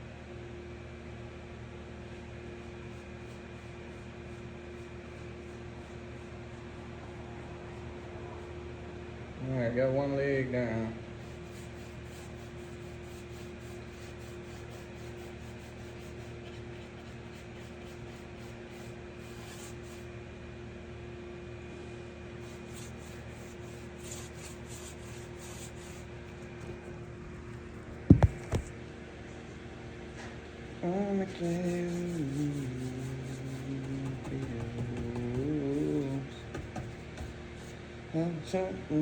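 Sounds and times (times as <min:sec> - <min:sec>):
steady hum: 0:01.6 - 0:39.0
wood sanded by hand: 0:11.2 - 0:20.1, 0:22.4 - 0:26.8, 0:31.3 - 0:37.8
sharp knocks: 0:33.8 - 0:37.4.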